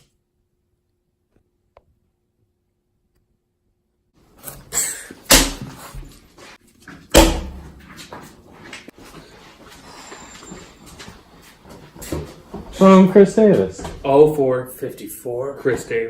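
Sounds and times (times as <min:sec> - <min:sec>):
loud thumps: 0:07.1 - 0:07.8.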